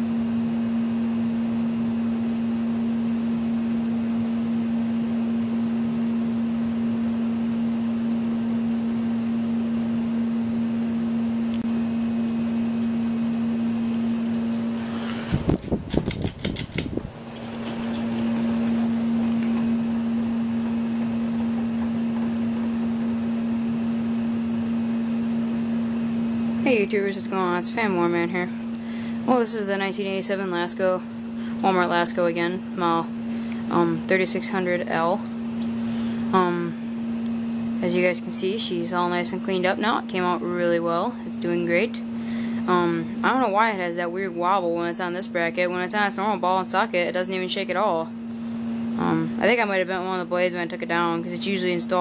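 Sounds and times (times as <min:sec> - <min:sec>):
ceiling fan motor hum: 0:00.0 - 0:52.0
sharp clicks or knocks: 0:15.3 - 0:17.0.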